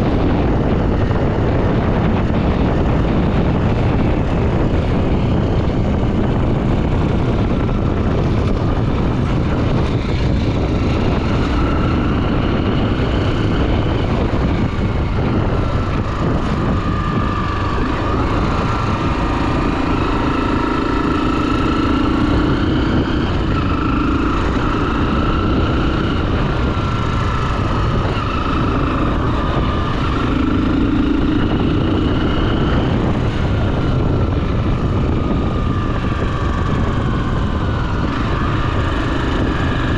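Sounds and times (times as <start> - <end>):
motorcycle engine running: 0.0 - 39.9
wind noise: 0.0 - 39.9.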